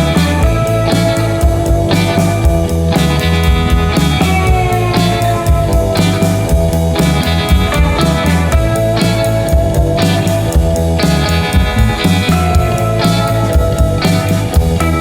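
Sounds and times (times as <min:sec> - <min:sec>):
rock music with electric guitar: 0:00.0 - 0:15.0.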